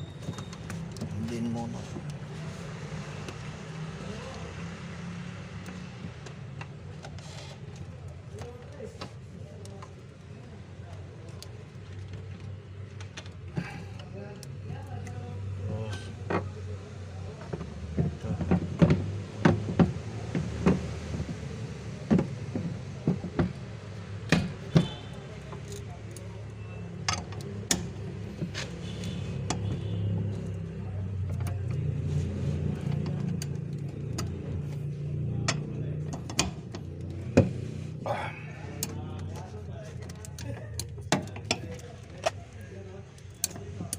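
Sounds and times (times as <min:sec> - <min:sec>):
clicks and knocks of tools: 0:27.0 - 0:37.6, 0:38.7 - 0:43.9.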